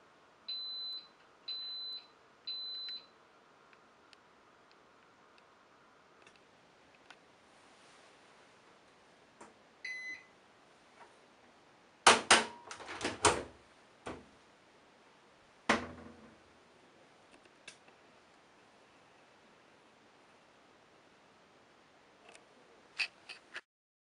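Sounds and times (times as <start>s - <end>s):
washing machine electronic beep: 0.5s - 3.1s, 9.8s - 10.3s
washing machine door clacks: 12.1s - 13.5s.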